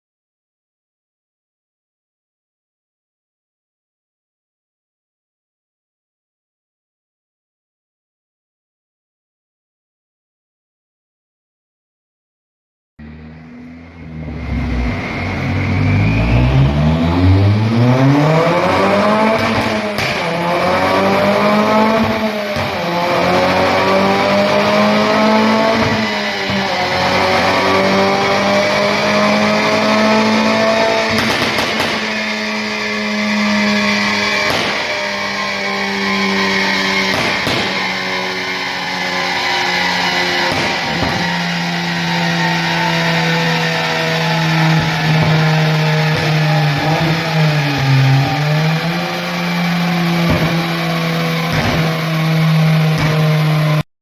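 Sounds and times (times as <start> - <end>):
car engine revving hard: 13.0 - 53.9
sharp exhaust cracks: 31.0 - 35.9, 36.5 - 38.4.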